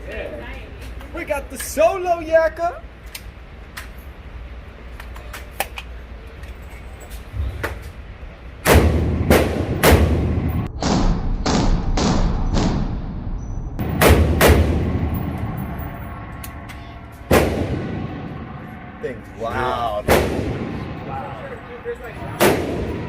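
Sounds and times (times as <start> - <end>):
gunshots with ringing tail: 8.7 - 23.0.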